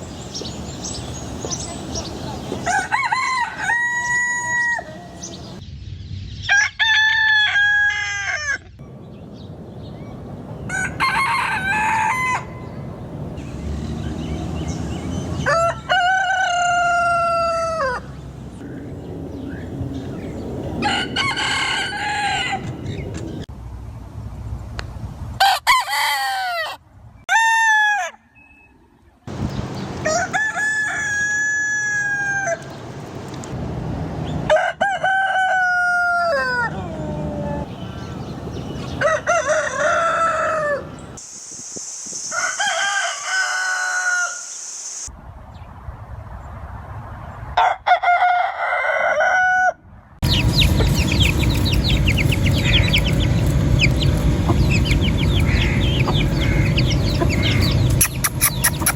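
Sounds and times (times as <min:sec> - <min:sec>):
rooster crowing: 0:02.6 - 0:05.4, 0:06.5 - 0:08.6, 0:10.7 - 0:12.8, 0:15.4 - 0:18.1, 0:20.8 - 0:23.0, 0:25.4 - 0:28.2, 0:30.0 - 0:32.7, 0:34.5 - 0:37.7, 0:38.9 - 0:41.0, 0:42.3 - 0:44.6, 0:47.6 - 0:57.8.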